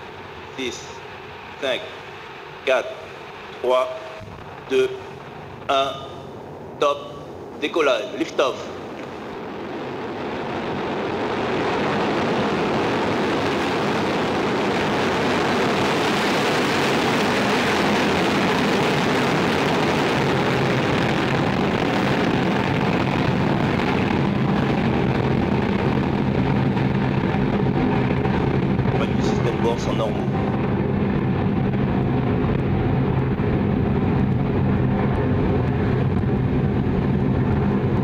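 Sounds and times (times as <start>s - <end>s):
rocket engines roaring: 0.0s - 38.0s.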